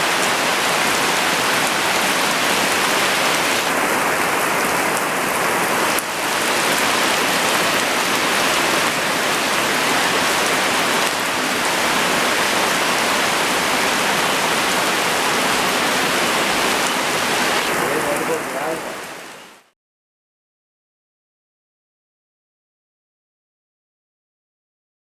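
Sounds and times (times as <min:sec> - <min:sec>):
heavy rain falling: 0:00.0 - 0:19.7.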